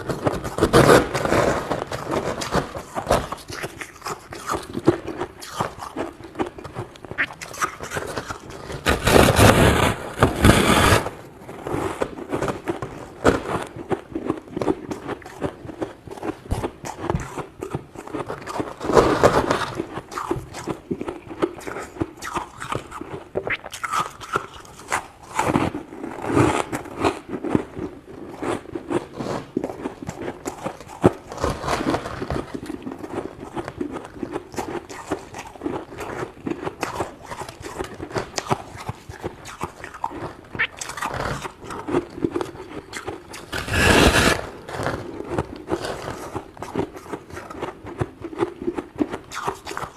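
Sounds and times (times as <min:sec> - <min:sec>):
freezer frost being scraped: 0:00.0 - 0:13.9, 0:16.2 - 0:20.8, 0:28.2 - 0:47.7.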